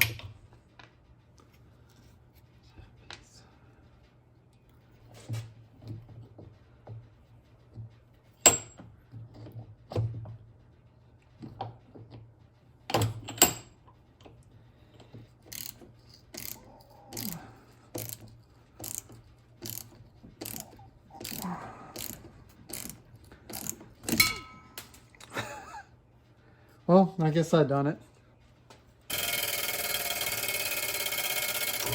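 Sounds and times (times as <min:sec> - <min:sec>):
ratchet wrench clicking: 0:15.5 - 0:16.6, 0:17.2 - 0:17.4, 0:18.0 - 0:24.2
metal clanks and knocks: 0:22.0 - 0:24.9.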